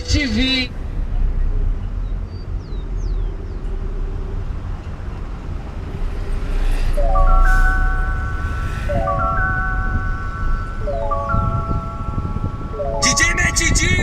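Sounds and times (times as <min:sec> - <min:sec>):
car engine and road noise: 0:00.0 - 0:14.0
bell-like melodic song: 0:06.4 - 0:14.0.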